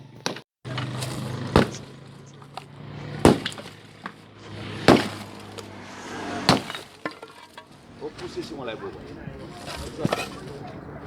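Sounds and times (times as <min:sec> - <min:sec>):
heavy demolition strikes: 0:00.7 - 0:10.6
debris crumbling and cracking: 0:06.5 - 0:07.9.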